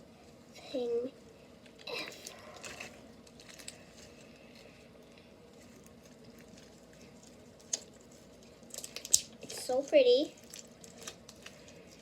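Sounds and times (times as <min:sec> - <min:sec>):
slime clicks and squishes: 0:08.6 - 0:09.7.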